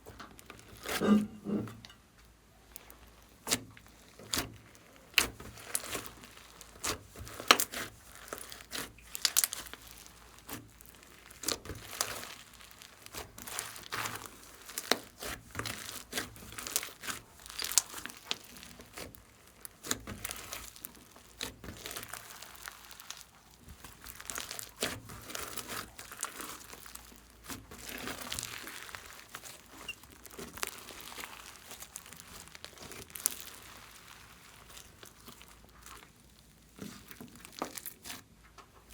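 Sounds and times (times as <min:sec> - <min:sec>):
slime crackling and popping: 0:00.1 - 0:01.0, 0:02.6 - 0:38.9.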